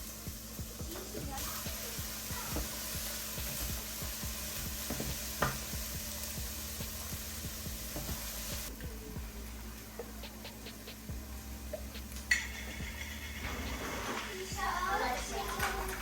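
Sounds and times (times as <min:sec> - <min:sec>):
food sizzling in a frying pan: 0:00.0 - 0:08.8, 0:09.5 - 0:16.0.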